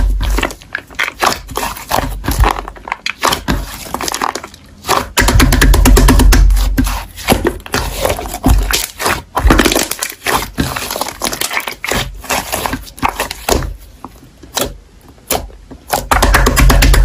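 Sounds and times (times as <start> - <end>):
slime crackling and popping: 0.0 - 5.4, 7.2 - 13.8.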